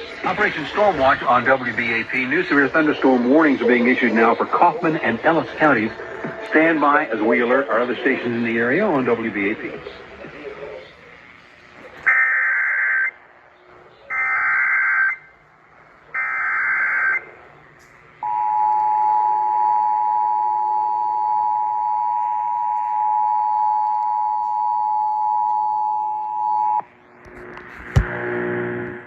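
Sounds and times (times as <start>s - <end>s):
digital data bursts: 0.0s - 18.4s.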